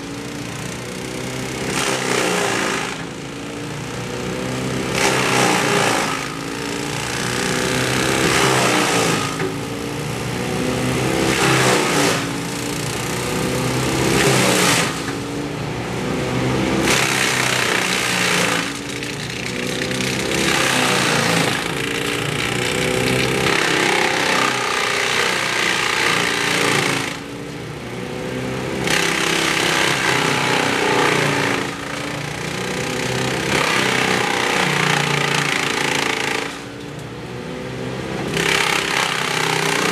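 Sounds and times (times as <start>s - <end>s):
petrol engine running hard: 0.0s - 35.0s
harsh wood cutting noise: 0.0s - 39.9s.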